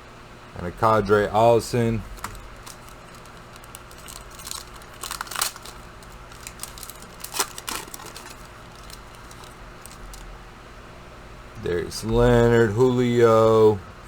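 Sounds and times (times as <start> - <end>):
cards and wrapper rustling: 1.9 - 10.3.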